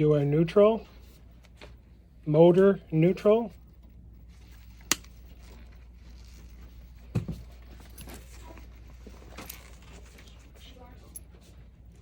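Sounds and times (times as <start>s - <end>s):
low steady hum: 0.0s - 12.0s
wires clicking and rustling: 4.3s - 11.5s.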